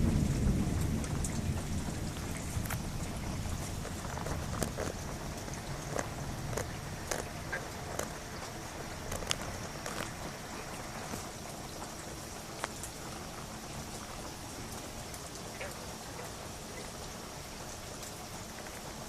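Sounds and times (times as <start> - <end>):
steady rain hiss: 0.0 - 19.0
drops ticking on hard surface: 3.7 - 10.4.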